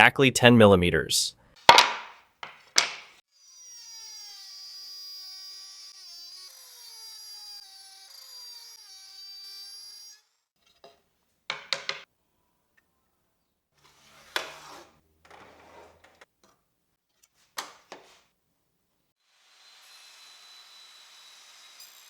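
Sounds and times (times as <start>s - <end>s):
sharp knocks of wood: 1.7s - 3.1s
wood router whining: 3.4s - 10.0s.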